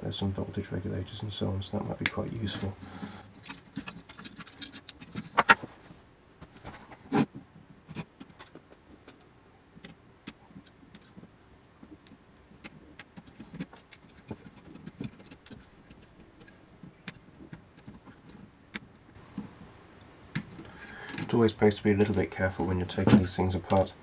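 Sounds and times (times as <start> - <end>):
sharp snaps: 2.0 - 2.6.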